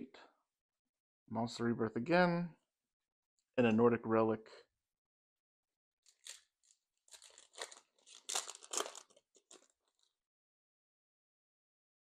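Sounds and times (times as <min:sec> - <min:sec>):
foil wrapper tearing and crinkling: 0:06.1 - 0:10.1.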